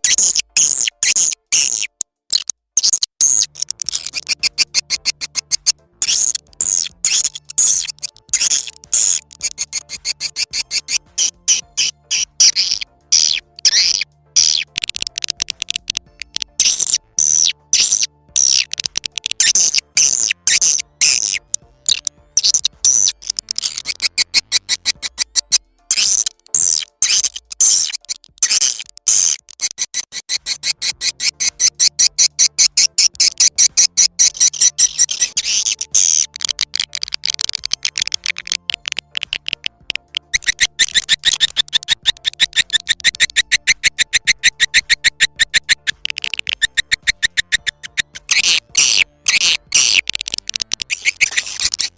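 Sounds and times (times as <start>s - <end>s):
recorded swiftlet twittering: 0.0s - 51.9s.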